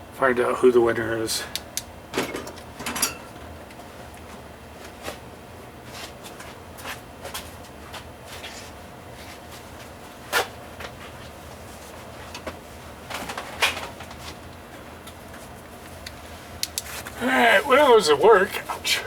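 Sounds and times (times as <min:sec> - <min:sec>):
light clicks: 0:16.0 - 0:16.9.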